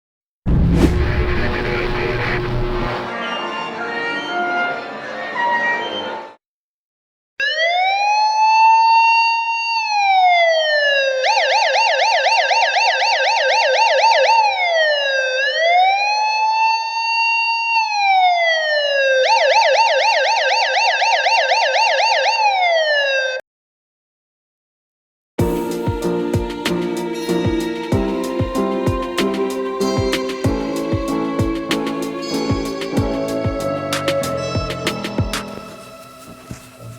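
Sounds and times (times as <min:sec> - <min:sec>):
police siren wailing and yelping: 0:07.4 - 0:23.4.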